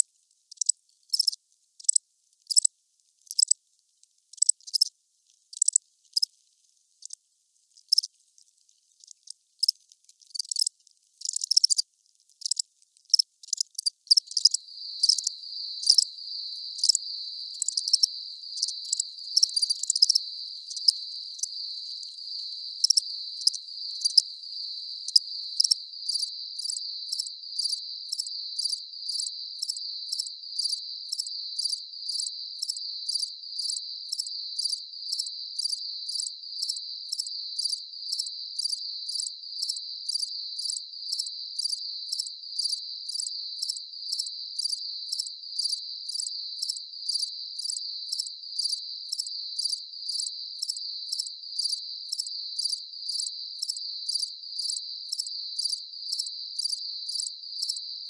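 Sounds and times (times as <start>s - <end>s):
crickets chirping: 12.4s - 58.0s.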